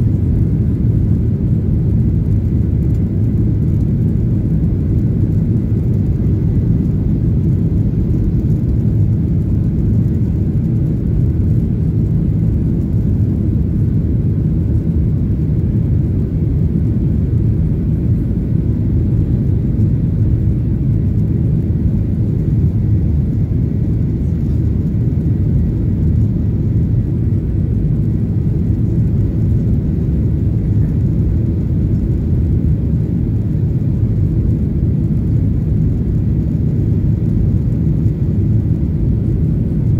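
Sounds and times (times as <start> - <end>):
jet airliner cabin rumble: 0.0 - 39.9.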